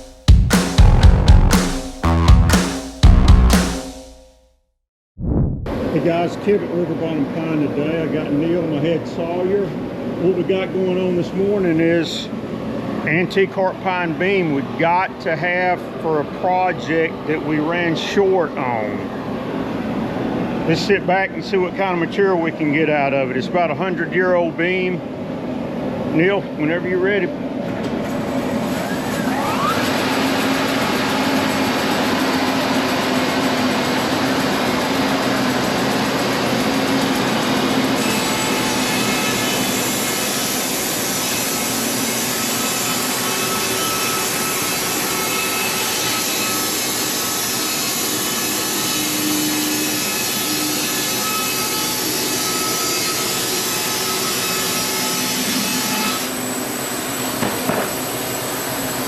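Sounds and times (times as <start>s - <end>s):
saw blade cutting wood: 36.0s - 58.4s.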